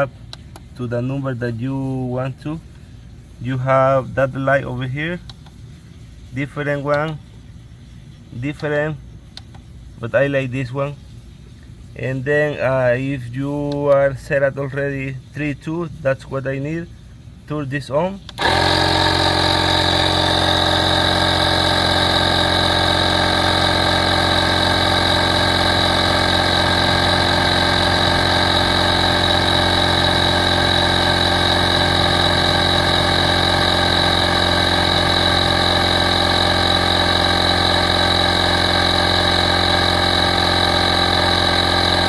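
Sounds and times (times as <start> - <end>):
tire inflator compressor running: 18.3 - 42.0.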